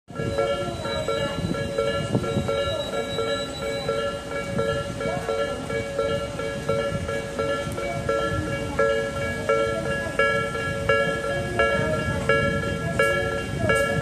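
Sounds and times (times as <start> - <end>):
level crossing alarm ringing: 0.1 - 14.0
train running rumble: 0.1 - 14.0.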